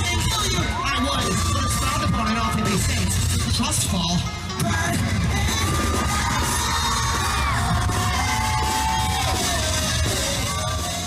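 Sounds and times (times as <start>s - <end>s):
crowd yelling: 0.0s - 3.4s, 4.6s - 11.0s
live punk rock band: 0.0s - 11.0s.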